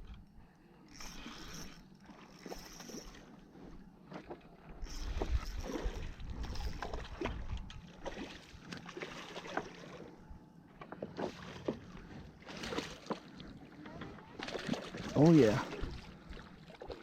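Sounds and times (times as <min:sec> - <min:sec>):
water splashing and lapping: 0:00.8 - 0:17.0
wind rumble on microphone: 0:04.8 - 0:08.2.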